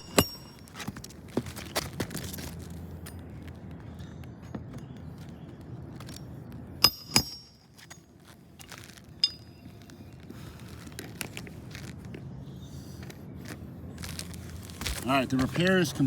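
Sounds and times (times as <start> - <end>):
metal-on-metal strikes ringing: 0.0 - 0.7, 6.8 - 8.0.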